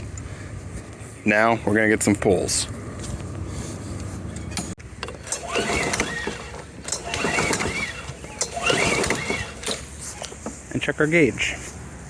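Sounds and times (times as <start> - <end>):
engine cranking: 4.4 - 10.6
mower starter rope pulled: 4.4 - 10.6.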